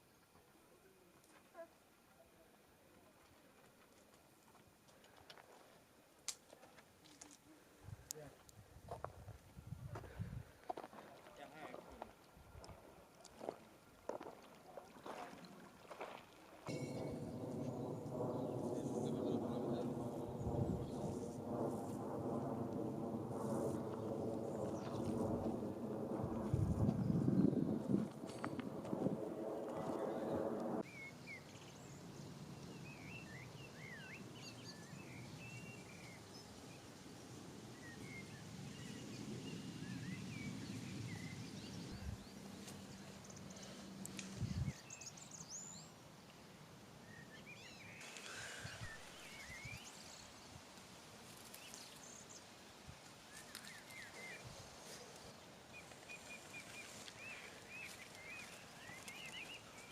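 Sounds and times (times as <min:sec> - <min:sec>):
low rumble: 0:16.7 - 0:30.8
birds chirping and twittering: 0:47.0 - 0:50.6, 0:53.3 - 0:59.9.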